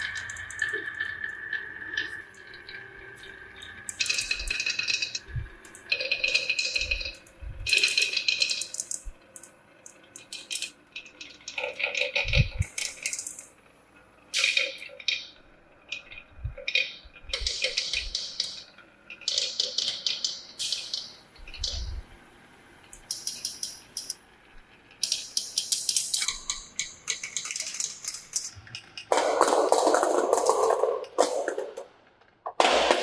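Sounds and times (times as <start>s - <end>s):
low rolling rattle: 0.0s - 25.0s, 25.7s - 33.0s
marbles clicking down plastic run: 3.8s - 13.6s, 14.4s - 21.6s, 25.0s - 31.9s.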